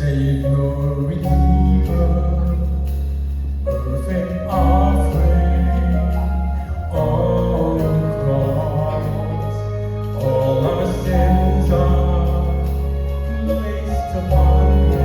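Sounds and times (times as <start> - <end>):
sustained chords and bass: 0.0 - 15.0
choir singing gospel music: 3.6 - 15.0.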